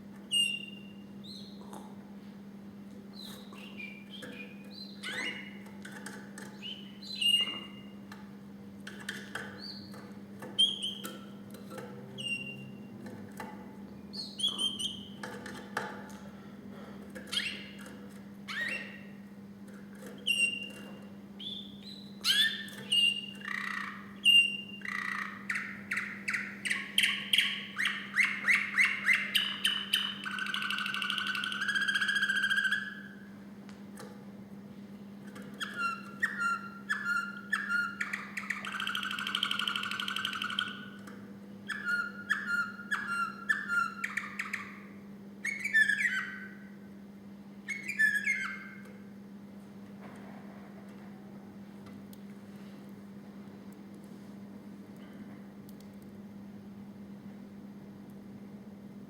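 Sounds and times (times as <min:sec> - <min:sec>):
canary singing: 0:00.3 - 0:01.6, 0:03.2 - 0:08.0, 0:08.9 - 0:11.4, 0:12.2 - 0:12.9, 0:14.0 - 0:15.4, 0:17.2 - 0:19.3, 0:20.0 - 0:33.3, 0:35.3 - 0:46.9, 0:47.6 - 0:49.0.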